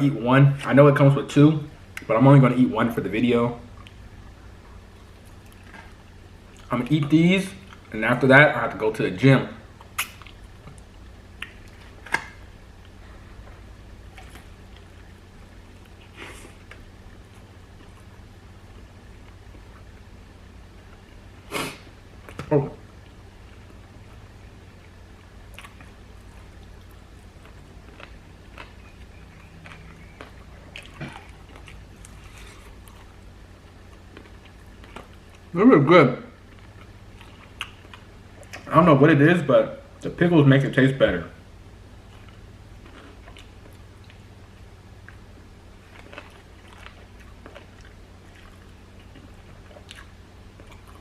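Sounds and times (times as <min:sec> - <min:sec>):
low hum: 0:00.0 - 0:51.0
chewing mouth sounds: 0:25.5 - 0:35.5, 0:36.4 - 0:38.7, 0:42.0 - 0:44.3, 0:45.9 - 0:51.0.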